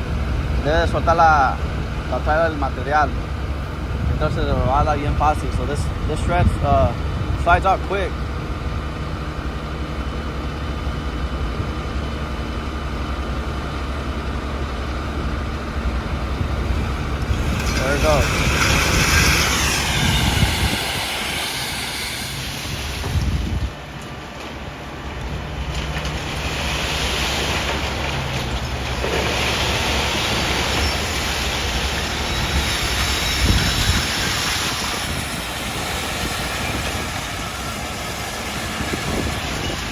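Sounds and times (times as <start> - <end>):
diesel truck engine running: 0.0 - 39.9
load sliding out of trailer: 16.3 - 39.9.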